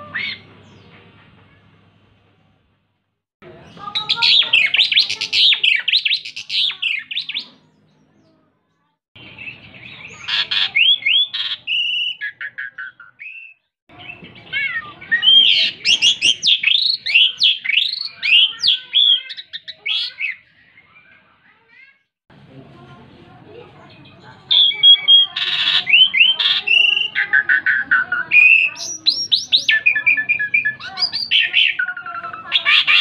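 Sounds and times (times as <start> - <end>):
starling singing: 0.0 - 1.0, 3.5 - 7.9, 9.2 - 20.9, 23.8 - 33.0.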